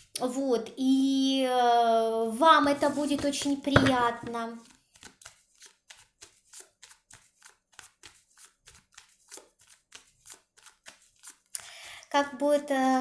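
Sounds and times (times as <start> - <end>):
cards being shuffled: 2.6 - 11.5.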